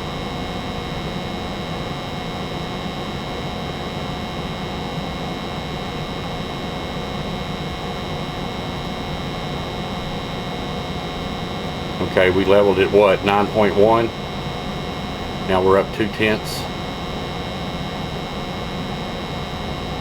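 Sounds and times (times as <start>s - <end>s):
gas furnace humming: 0.0s - 20.0s.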